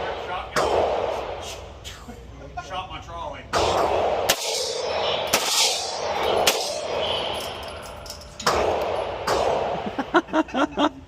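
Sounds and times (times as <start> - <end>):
gunshots echoing indoors: 0.0 - 1.6, 3.5 - 10.2.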